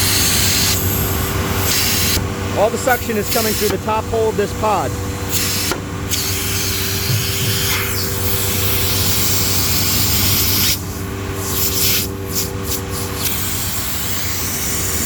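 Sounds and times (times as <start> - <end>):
vacuum pump humming: 0.0 - 11.4.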